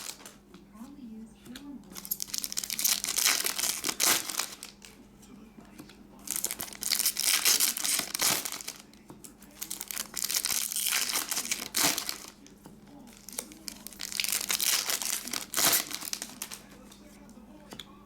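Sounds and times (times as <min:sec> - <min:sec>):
wrappers tearing and crinkling: 0:00.0 - 0:00.4, 0:01.9 - 0:05.0, 0:06.2 - 0:12.5, 0:13.1 - 0:16.7.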